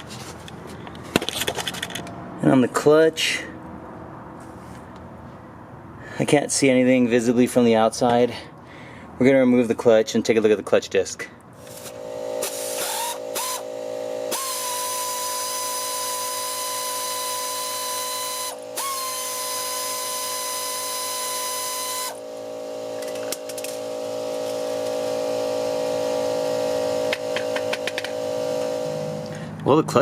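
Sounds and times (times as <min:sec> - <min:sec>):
power tool whining: 0:11.6 - 0:29.6.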